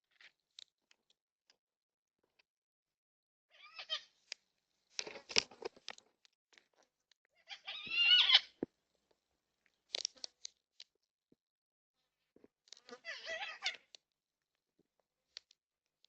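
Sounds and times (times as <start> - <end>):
birds crunching seed: 9.8 - 11.0.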